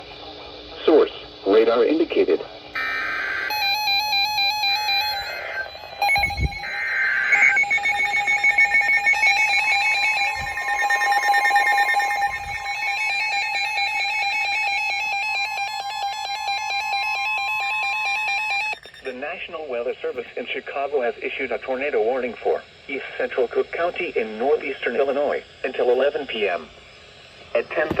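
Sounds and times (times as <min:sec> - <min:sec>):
steady single-pitch warning tone: 0:00.7 - 0:28.0
warbling electronic alarm tone: 0:02.8 - 0:20.5.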